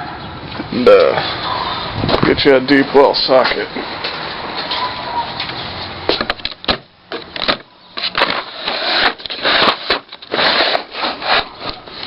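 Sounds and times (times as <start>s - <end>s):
rattling rustle: 5.8s - 12.0s.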